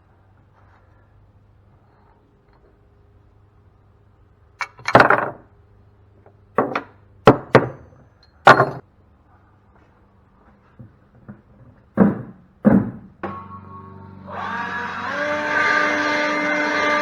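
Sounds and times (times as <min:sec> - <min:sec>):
metal knocks and clanks: 0:06.6 - 0:08.8.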